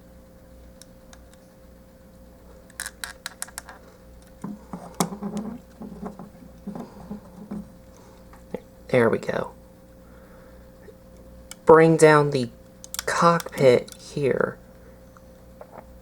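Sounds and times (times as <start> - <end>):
plastic parts clicking: 2.7 - 6.9.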